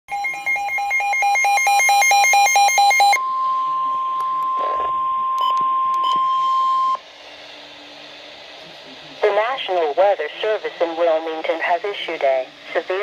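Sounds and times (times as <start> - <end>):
steady alarm tone: 0.1 - 7.0
two-pitch alternating beeping: 0.1 - 7.0.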